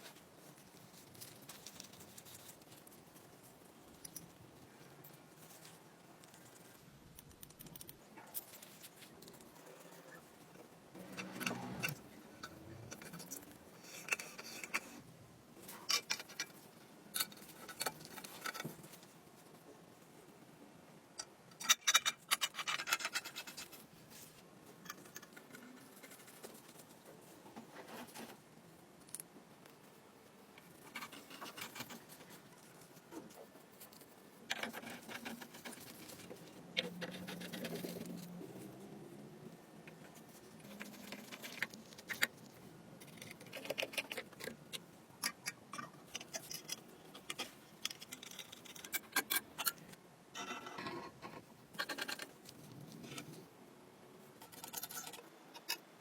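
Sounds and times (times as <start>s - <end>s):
scraping and scratching metal parts: 11.0s - 19.1s, 21.6s - 28.4s, 30.6s - 39.0s, 39.9s - 49.8s, 50.4s - 53.4s, 54.4s - 55.8s.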